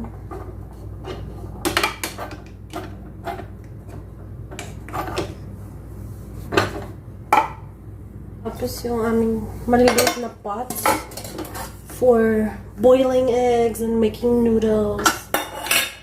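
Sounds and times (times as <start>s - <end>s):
metal utensils and pots clinking: 9.8s - 11.9s, 15.0s - 16.0s.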